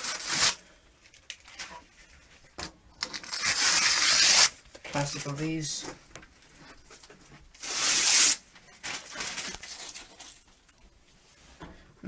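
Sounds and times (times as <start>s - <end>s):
plastic film ripping: 0.0s - 0.6s, 3.0s - 5.4s, 7.6s - 10.8s
plastic rustling: 0.0s - 10.9s.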